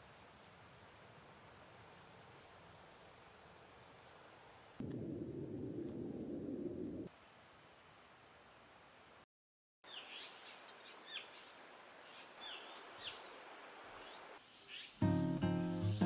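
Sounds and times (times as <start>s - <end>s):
faint outdoor hiss: 0.0s - 9.3s, 9.9s - 16.0s
wild birds chirping: 9.9s - 15.1s
guitar music: 15.0s - 16.0s.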